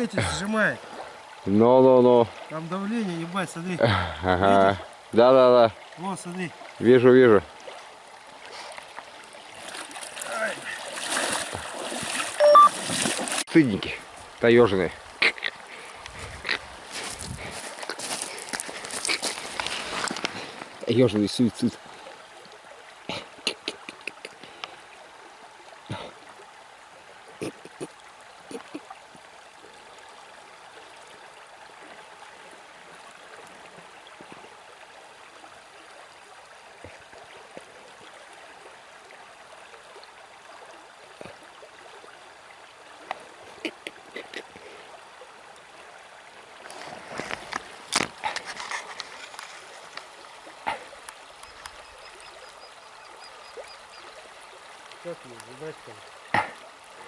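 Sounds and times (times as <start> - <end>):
river water flowing: 0.0 - 57.0
water splashes and knocks: 8.6 - 13.6, 16.1 - 21.7, 46.6 - 51.8, 54.7 - 56.7.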